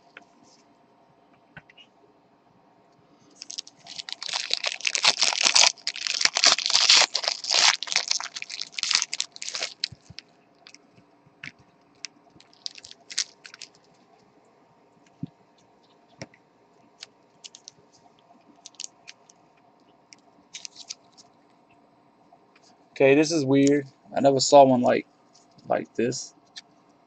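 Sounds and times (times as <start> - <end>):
plastic packaging crinkling: 3.3 - 10.8, 11.9 - 14.0, 17.0 - 17.7, 18.6 - 19.3, 20.5 - 21.2.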